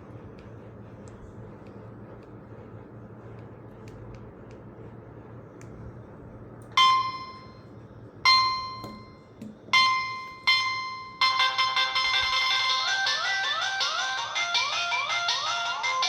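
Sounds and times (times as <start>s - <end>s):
fast electronic ringtone melody: 9.8s - 14.6s.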